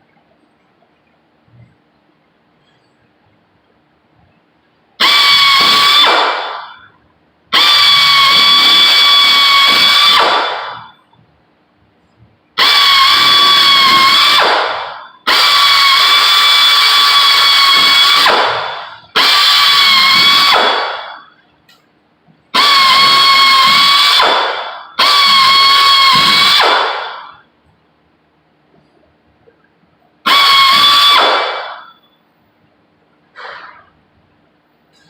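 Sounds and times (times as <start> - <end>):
power drill whining: 5.0 - 6.2, 12.6 - 14.5, 22.6 - 24.3, 25.0 - 26.7, 30.3 - 31.3.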